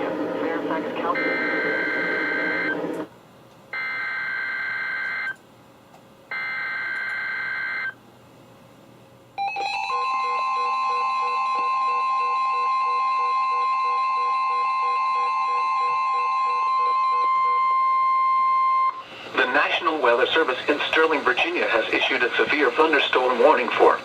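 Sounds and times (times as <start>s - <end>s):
steady warning alarm tone: 0.5s - 3.1s, 3.8s - 5.4s, 6.3s - 8.0s, 9.4s - 19.1s.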